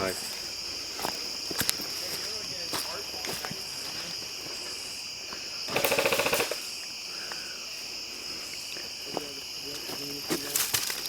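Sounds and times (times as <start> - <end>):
crickets chirping: 0.0 - 11.0
airsoft gun firing burst: 5.7 - 6.6.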